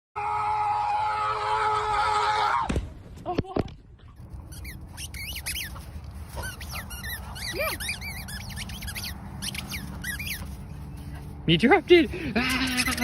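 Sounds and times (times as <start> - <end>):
animal squeaks and chirps: 4.2 - 11.2, 12.4 - 13.0.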